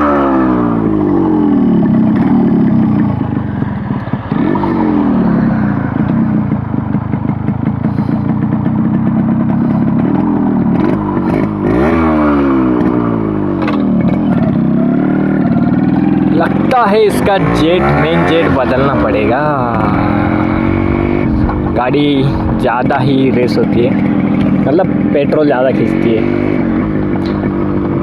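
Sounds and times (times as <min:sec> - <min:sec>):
two-stroke motorcycle engine: 0:00.0 - 0:28.0.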